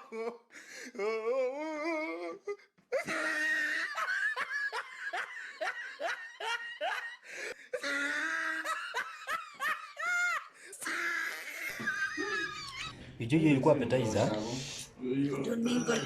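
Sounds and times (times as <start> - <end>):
person laughing heartily: 2.9 - 10.6, 11.4 - 13.0.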